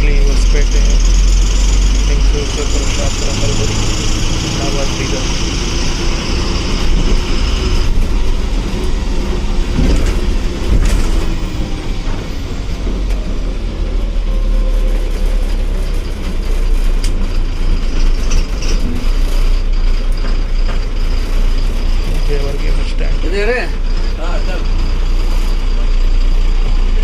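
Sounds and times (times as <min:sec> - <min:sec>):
diesel engine low rumble: 0:00.0 - 0:27.0.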